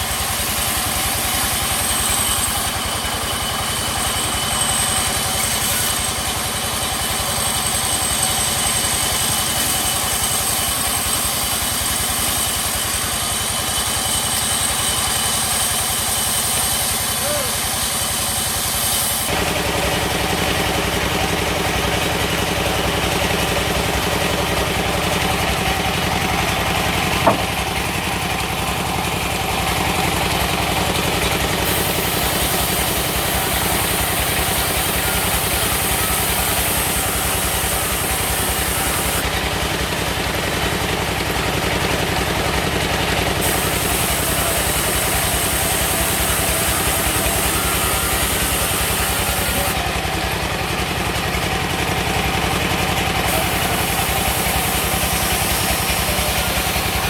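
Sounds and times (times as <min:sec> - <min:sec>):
sawmill machine running: 0:00.0 - 0:57.0
sharp knock: 0:27.1 - 0:27.8.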